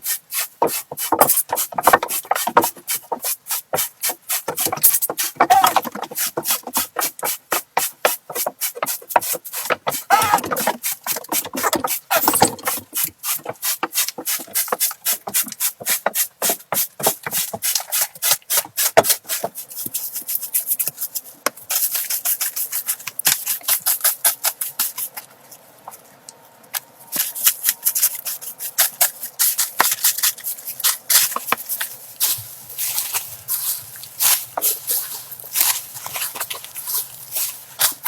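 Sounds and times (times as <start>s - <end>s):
rapid scraping strokes: 0.0s - 25.1s.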